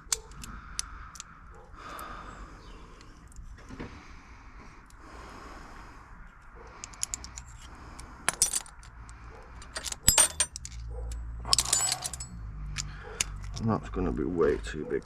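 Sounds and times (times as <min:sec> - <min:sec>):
metal hand tools clinking: 0:08.3 - 0:08.8, 0:09.6 - 0:10.8, 0:11.5 - 0:13.6.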